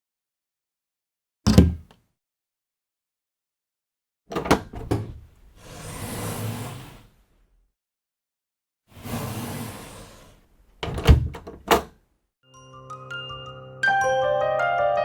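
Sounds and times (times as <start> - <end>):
door shutting with a thump: 1.5 - 1.9, 10.8 - 11.9
door swinging open: 1.5 - 1.9, 4.3 - 5.3, 10.8 - 12.0
door handle and latch clicking: 1.5 - 2.0, 4.3 - 5.2, 10.8 - 12.0.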